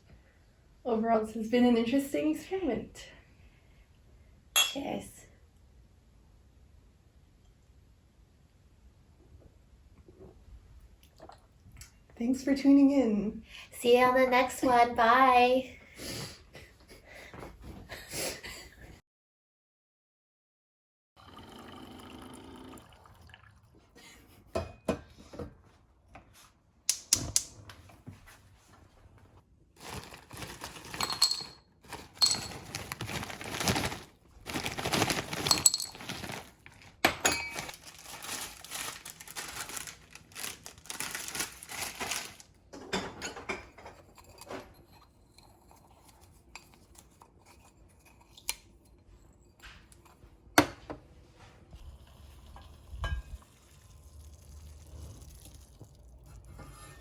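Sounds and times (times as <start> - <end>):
dishes and utensils clinking: 30.8 - 32.8, 37.0 - 37.8, 42.7 - 45.8.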